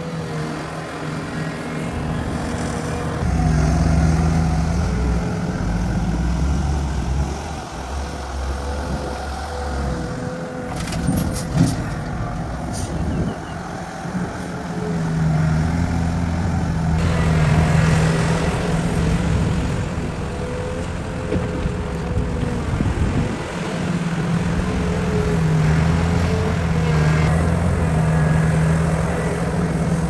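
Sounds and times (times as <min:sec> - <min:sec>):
heavy machine engine running: 0:00.0 - 0:30.0.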